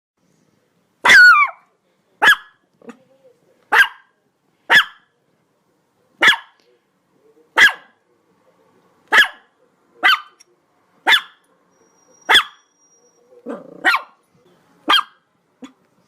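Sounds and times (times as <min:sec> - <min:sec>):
dog barking: 0:01.0 - 0:01.6, 0:02.2 - 0:02.6, 0:03.7 - 0:05.1, 0:06.2 - 0:06.6, 0:07.6 - 0:08.0, 0:09.1 - 0:10.4, 0:11.0 - 0:11.4, 0:12.2 - 0:12.7, 0:13.5 - 0:14.2, 0:14.8 - 0:15.8.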